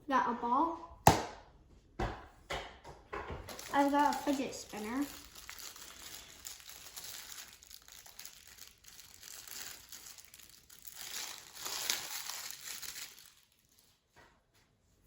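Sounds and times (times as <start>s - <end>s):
crinkling and rustling: 3.4s - 14.6s.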